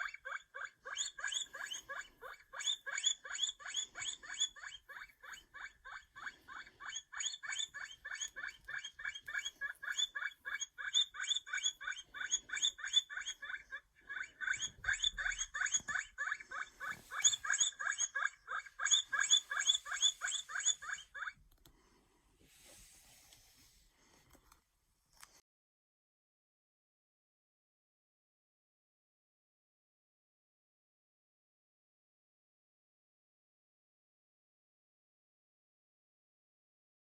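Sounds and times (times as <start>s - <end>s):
guinea pig squeaking: 0.0s - 21.4s.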